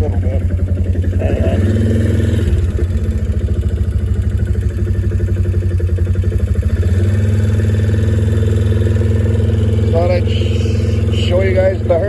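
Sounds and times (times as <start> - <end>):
small vehicle engine running: 0.0 - 12.0.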